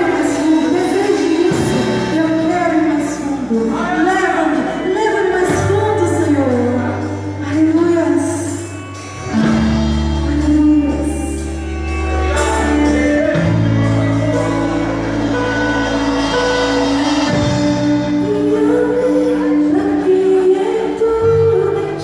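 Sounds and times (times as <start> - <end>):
keyboard and bass chords: 0.0 - 22.0.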